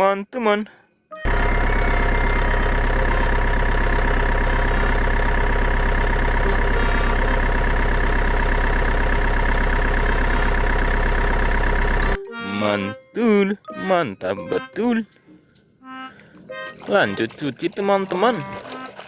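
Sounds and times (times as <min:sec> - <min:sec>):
truck engine idling: 0:01.2 - 0:12.9.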